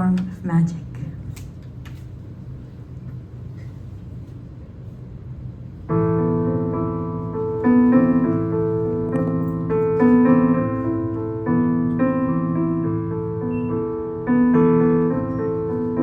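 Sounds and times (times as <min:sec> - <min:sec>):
solo piano chords: 0:05.9 - 0:16.0.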